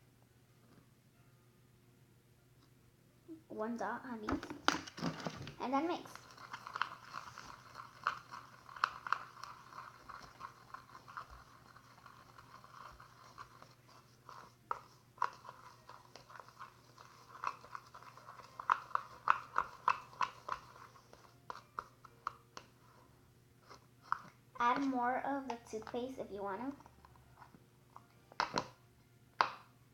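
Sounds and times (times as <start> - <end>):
utensil scraping dough in bowl: 6.0 - 21.9.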